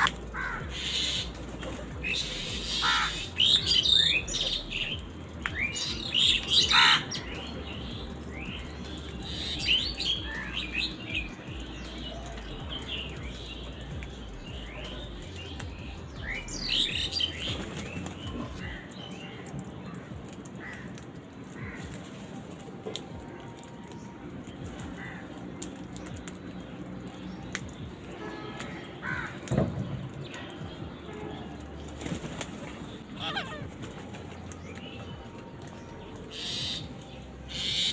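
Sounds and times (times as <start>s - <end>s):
birds chirping: 0.0s - 37.9s.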